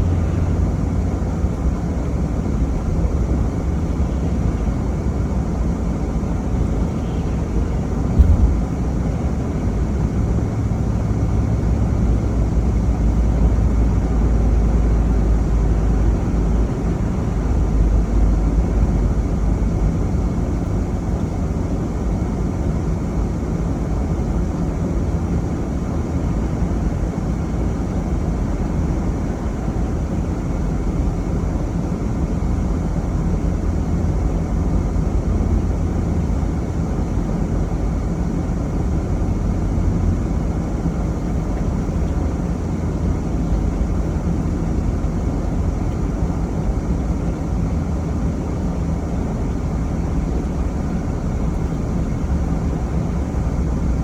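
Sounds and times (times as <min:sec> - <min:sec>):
vehicle engine and tyres rumbling: 0:00.0 - 0:54.0
thump: 0:08.1 - 0:08.9.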